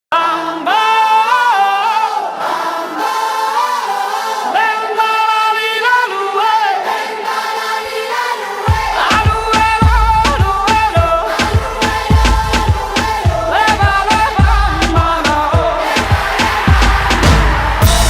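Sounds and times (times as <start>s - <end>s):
choir-like layered singing: 0.1s - 18.0s.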